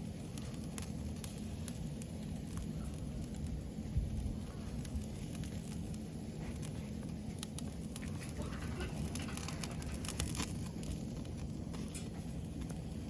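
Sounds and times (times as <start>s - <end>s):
fire pops: 0.0s - 13.0s
wood fire crackling: 0.0s - 13.0s.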